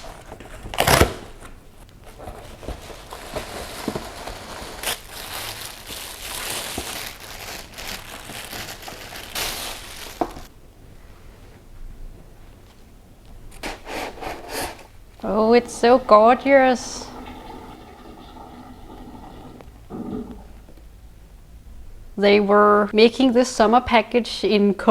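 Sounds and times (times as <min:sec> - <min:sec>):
packaging crinkling: 0:00.0 - 0:10.5.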